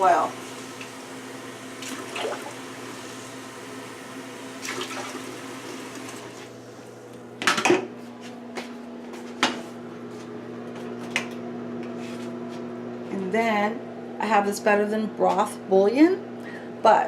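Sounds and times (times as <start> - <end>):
water pouring into a pot: 1.7 - 3.5, 4.6 - 6.4.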